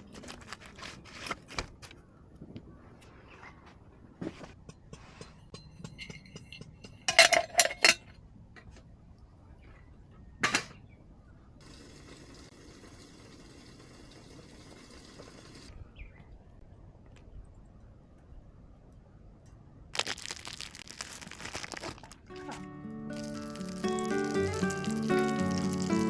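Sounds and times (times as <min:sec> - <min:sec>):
tableware clinking: 0:05.6 - 0:08.0.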